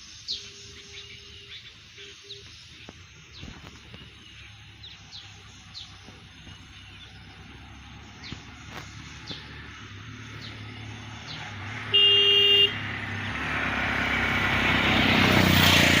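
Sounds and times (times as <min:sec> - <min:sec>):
small birds chirping: 0:00.0 - 0:13.4
vehicle approaching: 0:03.1 - 0:16.0
vehicle horn toot: 0:11.9 - 0:12.9.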